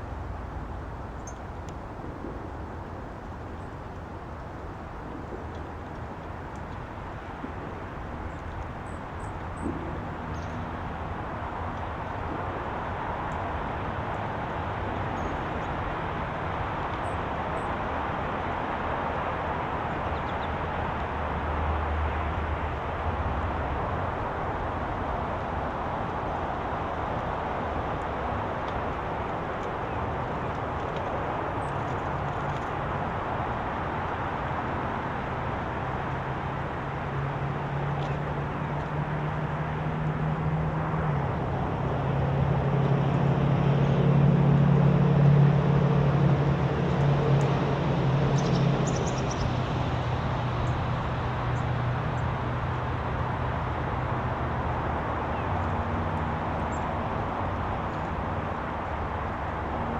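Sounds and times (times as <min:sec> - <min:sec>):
outdoor background noise: 0:00.0 - 0:59.9
passing engine drone: 0:34.8 - 0:59.9.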